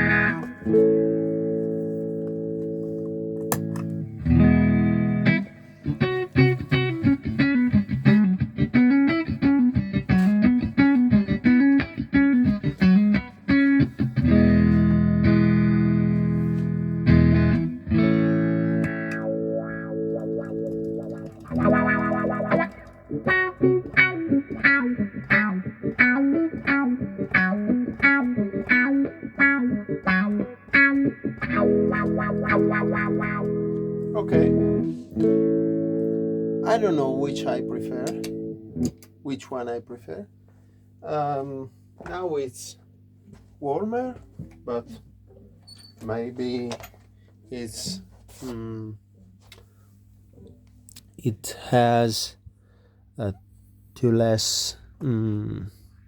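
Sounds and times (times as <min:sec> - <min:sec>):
electric guitar with wah pedal: 0:00.0 - 0:39.2.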